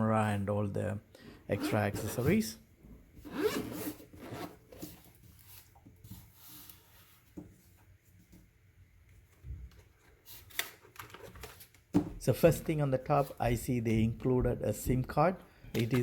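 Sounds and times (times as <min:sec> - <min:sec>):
rubbing and rustling handling: 0:03.1 - 0:08.6
case being unzipped: 0:03.3 - 0:05.0.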